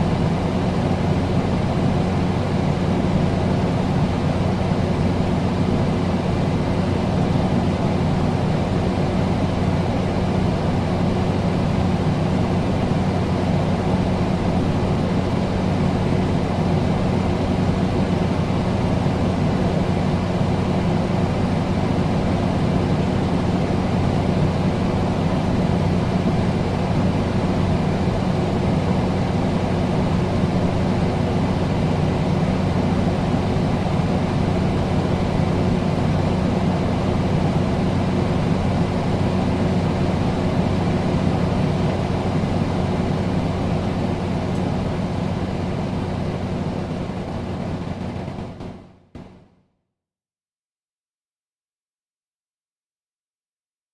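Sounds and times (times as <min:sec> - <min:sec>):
air conditioner running: 0:00.0 - 0:49.3.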